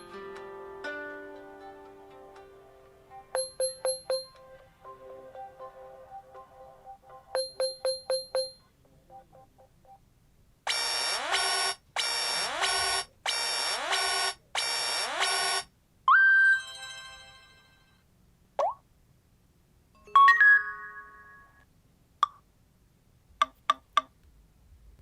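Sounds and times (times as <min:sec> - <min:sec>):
mobile phone ringtones: 0:03.4 - 0:04.4, 0:07.4 - 0:09.2, 0:10.7 - 0:18.0, 0:20.1 - 0:21.6.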